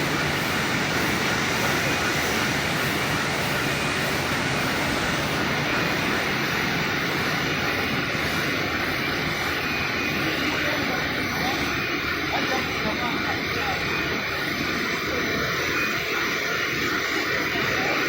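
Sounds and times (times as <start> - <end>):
paper cutting machine running: 0.0 - 14.5.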